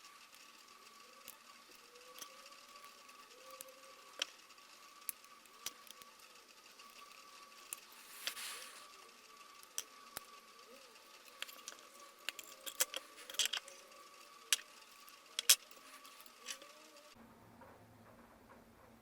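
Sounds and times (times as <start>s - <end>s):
brief scrape: 7.9s - 8.9s
metallic clicks of hand tools: 15.4s - 15.7s.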